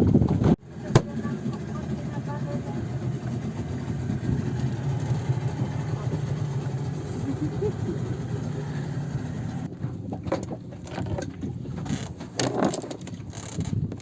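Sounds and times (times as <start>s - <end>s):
boat engine idling: 0.1s - 10.1s.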